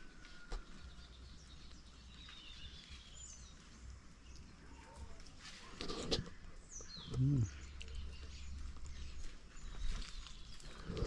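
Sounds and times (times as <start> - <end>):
birds chirping: 0.0 - 5.2, 5.8 - 11.0
rustling noise: 5.2 - 6.6.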